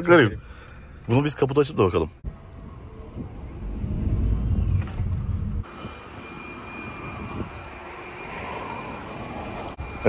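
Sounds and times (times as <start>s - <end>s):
loud low rumble: 2.2s - 5.9s.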